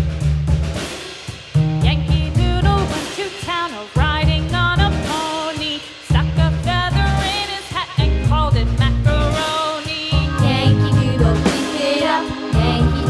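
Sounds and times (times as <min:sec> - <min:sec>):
background music with steady beat: 0:07.2 - 0:13.0.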